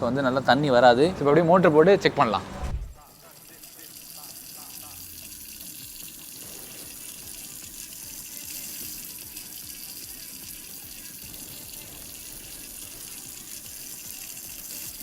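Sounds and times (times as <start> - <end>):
water spraying hiss: 3.0 - 15.0.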